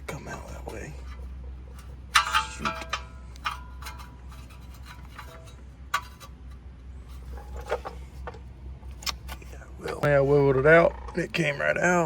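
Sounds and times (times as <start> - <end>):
steady low hum: 0.0 - 12.0
small metallic clicks and knocks: 0.7 - 10.2.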